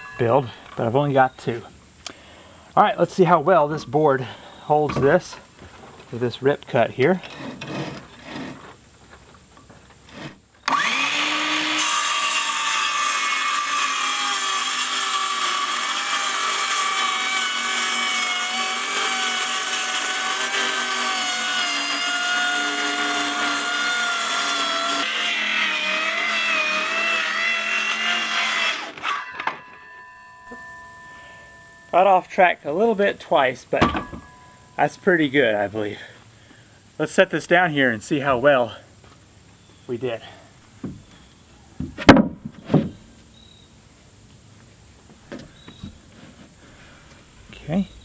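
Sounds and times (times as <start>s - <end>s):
circular saw cutting a board: 10.1s - 31.4s.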